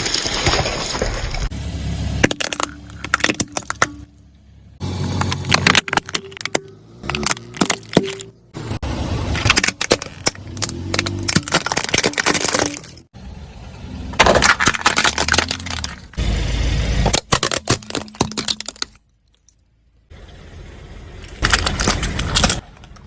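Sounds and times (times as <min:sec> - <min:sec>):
low engine hum: 0:01.5 - 0:11.7
tyre crushing crunchy objects: 0:02.1 - 0:04.2, 0:04.8 - 0:13.1, 0:14.1 - 0:16.2, 0:17.0 - 0:19.0, 0:21.3 - 0:22.7.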